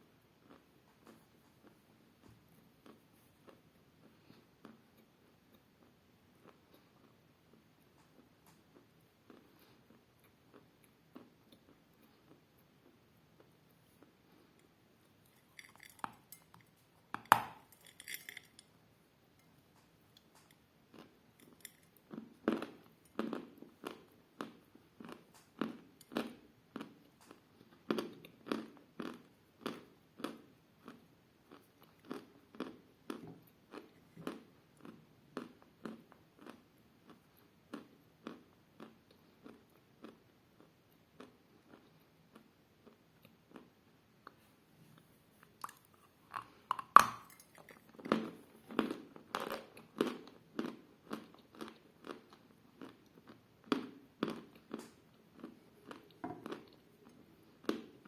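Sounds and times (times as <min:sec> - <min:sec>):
chewing: 0:45.0 - 0:57.9.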